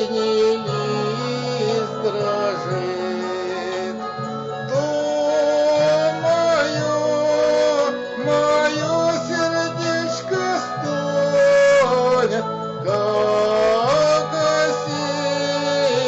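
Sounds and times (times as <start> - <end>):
slow melody over sustained chords: 0.0 - 16.0.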